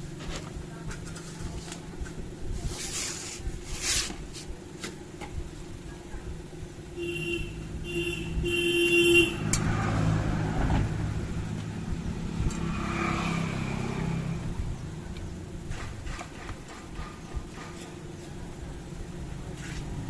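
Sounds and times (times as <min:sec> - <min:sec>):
vehicle horn tooting: 0:07.0 - 0:09.6
motor vehicle passing by: 0:09.0 - 0:15.1.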